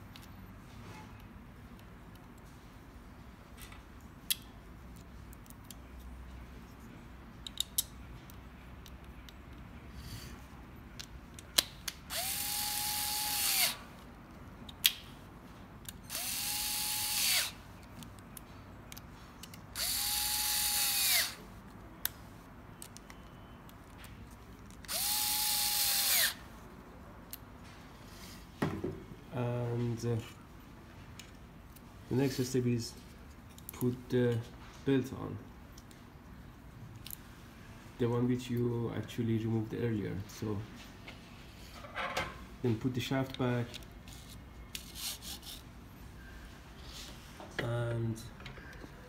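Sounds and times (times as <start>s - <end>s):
clicks of small parts and tools: 7.4s - 9.6s
power driver running screws: 12.1s - 13.8s, 16.1s - 17.6s, 19.8s - 21.4s, 24.9s - 26.4s.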